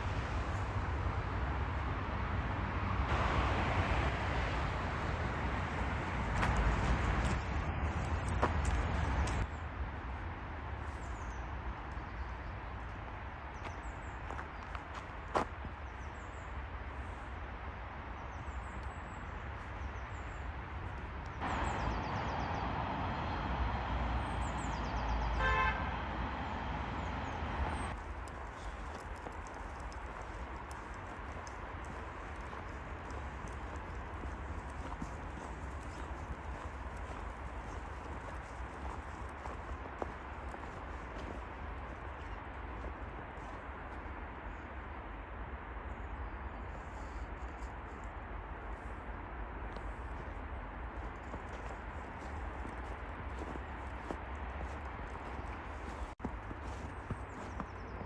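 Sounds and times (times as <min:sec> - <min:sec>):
birds chirping: 0:18.0 - 0:44.9, 0:49.8 - 0:58.0
horn toot: 0:25.2 - 0:26.3.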